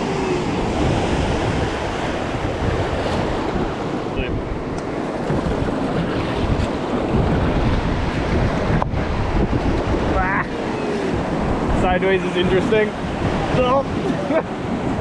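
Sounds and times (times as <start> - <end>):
whitewater rushing: 0.0 - 4.3
wind buffeting microphone: 0.0 - 15.0.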